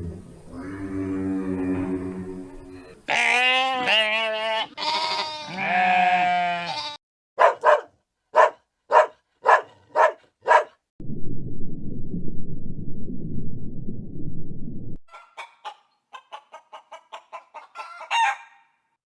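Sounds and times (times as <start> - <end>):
goat bleating: 3.1 - 7.0
dog barking: 7.4 - 10.8.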